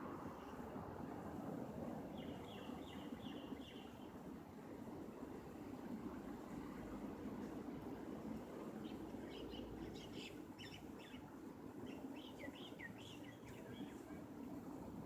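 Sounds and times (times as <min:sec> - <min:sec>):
bird chirping: 0:02.2 - 0:04.0, 0:08.8 - 0:14.0.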